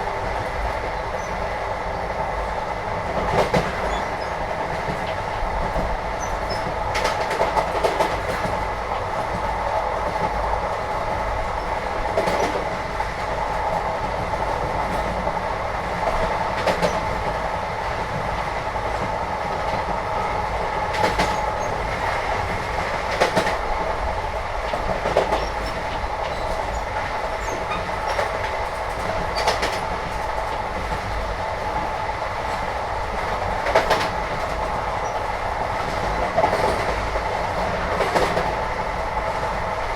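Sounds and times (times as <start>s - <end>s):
train running rumble: 0.0s - 39.9s.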